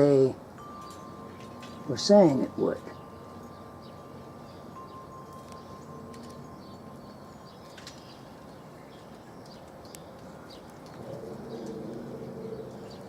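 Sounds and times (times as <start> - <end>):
light wind: 0.0 - 13.0
small birds chirping: 0.0 - 13.0
dove cooing: 10.9 - 13.0.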